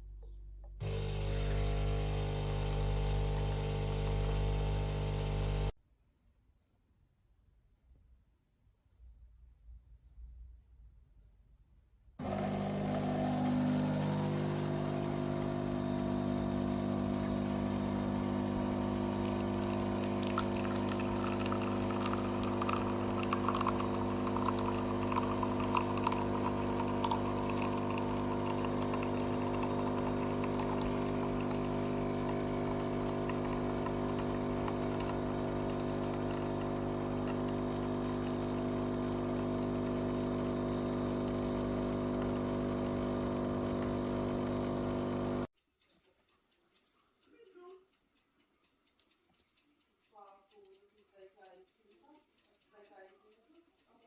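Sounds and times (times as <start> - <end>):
coffee machine pump humming: 0.8 - 5.8, 12.2 - 45.5
liquid pouring into cup: 12.2 - 45.0.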